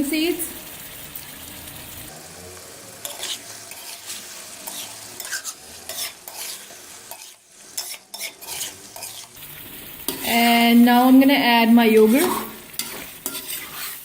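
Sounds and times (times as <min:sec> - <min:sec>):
chicken sizzling in hot oil: 0:00.0 - 0:14.0
spoon scraping a pan: 0:03.0 - 0:10.4, 0:11.8 - 0:14.0.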